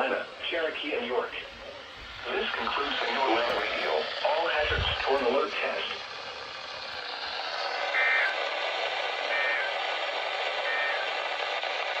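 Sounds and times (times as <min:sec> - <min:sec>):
radio hiss: 0:00.0 - 0:12.0
two-tone data bursts: 0:07.9 - 0:08.4, 0:09.3 - 0:09.8, 0:10.6 - 0:11.2.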